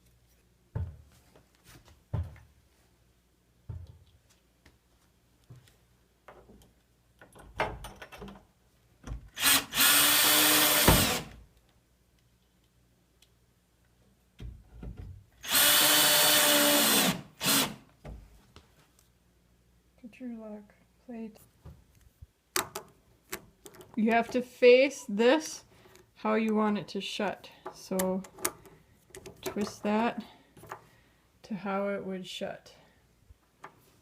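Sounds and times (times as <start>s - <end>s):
power drill whine: 9.4s - 11.3s, 15.4s - 17.8s
handling clicks and knocks: 22.6s - 24.4s, 27.7s - 29.9s.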